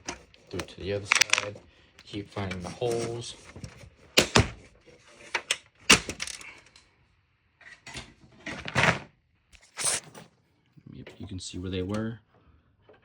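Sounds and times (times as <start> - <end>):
plastic scraping on plastic: 0.0 - 5.5, 9.6 - 10.3
plastic clips clicking and snapping: 0.6 - 1.6.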